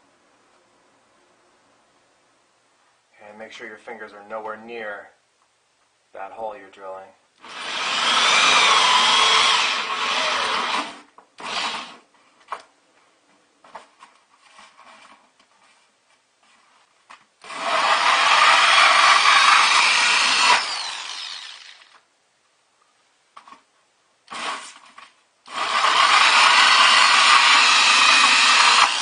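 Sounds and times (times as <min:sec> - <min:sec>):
power drill with hole saw: 0:07.4 - 0:12.0, 0:17.4 - 0:22.0, 0:24.3 - 0:24.8, 0:25.5 - 0:29.0
light knocks and scrapes: 0:13.6 - 0:17.2.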